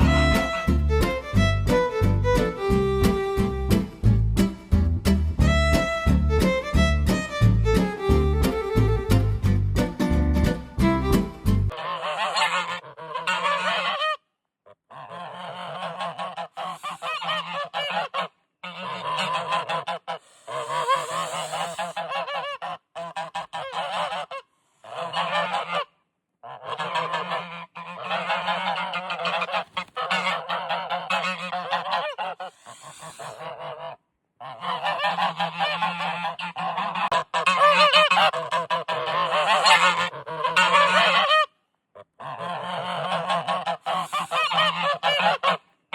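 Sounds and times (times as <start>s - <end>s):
geese honking: 0.0s - 3.6s, 11.1s - 14.2s, 14.9s - 41.5s, 42.2s - 45.7s.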